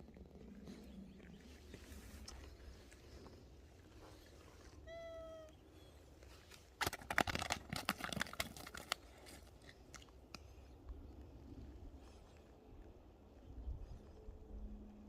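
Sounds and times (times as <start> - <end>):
cat meowing: 4.8 - 5.6
quick sharp clicks and crackles: 6.5 - 10.5.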